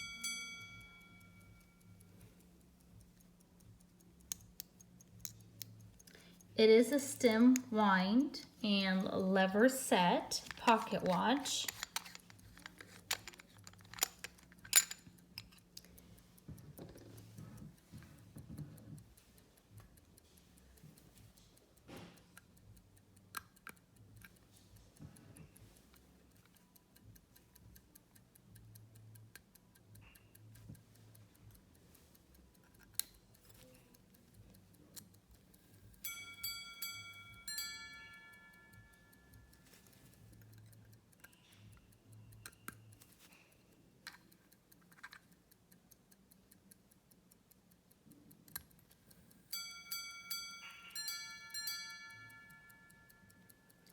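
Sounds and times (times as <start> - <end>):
handling clicks: 0.0 - 27.4
pocket watch ticking faintly: 0.0 - 53.9.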